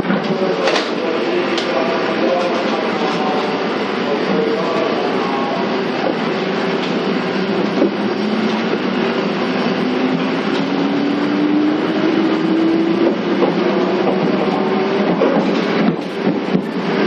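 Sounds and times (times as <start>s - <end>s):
rail-joint clicks: 0.0s - 3.6s, 5.8s - 8.9s, 9.8s - 11.0s, 12.1s - 17.0s
wheels rumbling on rail: 0.0s - 17.0s.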